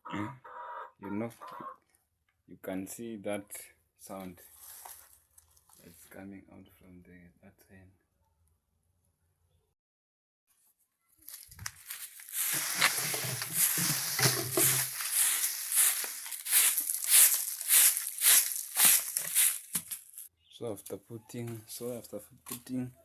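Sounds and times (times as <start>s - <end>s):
broom sweeping floor: 11.7s - 20.3s.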